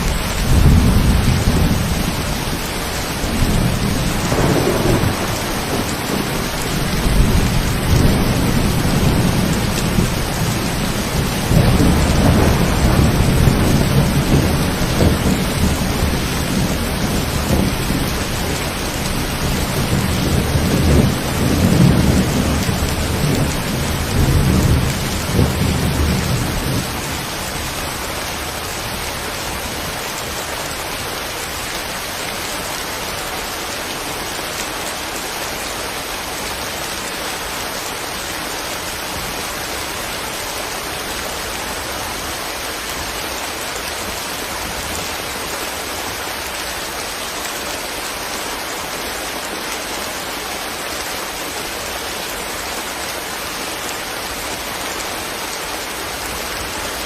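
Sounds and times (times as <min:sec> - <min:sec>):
steady rain falling: 0:00.0 - 0:57.0
rolling thunder: 0:03.3 - 0:27.7.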